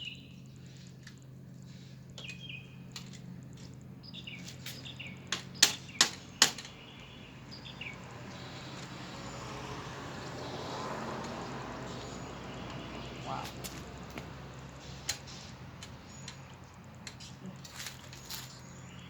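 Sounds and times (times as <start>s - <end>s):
small birds chirping: 0.0s - 19.0s
sharp knocks: 5.3s - 6.7s.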